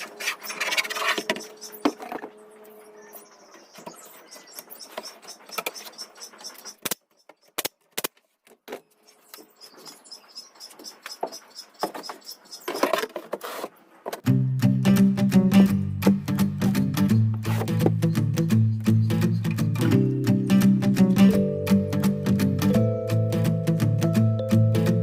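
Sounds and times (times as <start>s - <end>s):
music with plucked guitar: 14.2s - 25.0s.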